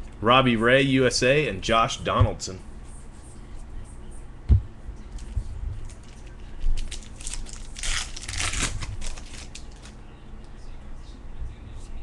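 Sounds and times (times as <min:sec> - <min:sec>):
wrapper crinkling and tearing: 0:05.2 - 0:10.0.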